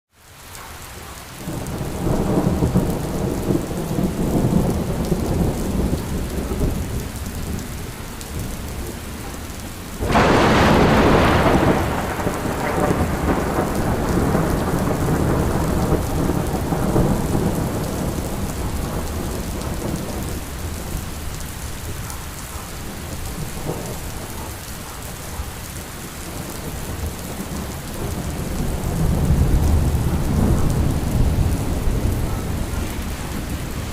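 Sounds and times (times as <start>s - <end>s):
steady rain falling: 0.1s - 33.9s
thunder rumbling: 1.4s - 33.9s
loud thunderclap: 1.5s - 7.6s, 10.0s - 21.2s, 26.3s - 33.9s.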